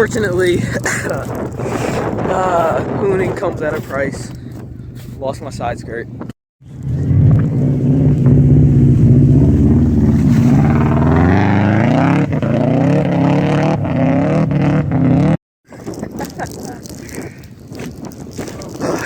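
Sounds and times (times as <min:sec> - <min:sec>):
car engine revving: 0:06.6 - 0:15.4.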